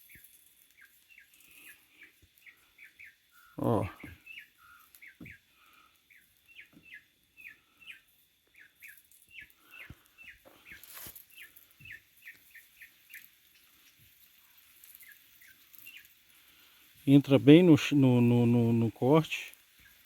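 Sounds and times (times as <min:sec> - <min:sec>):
bird chirping: 0:00.0 - 0:14.0, 0:14.8 - 0:16.2.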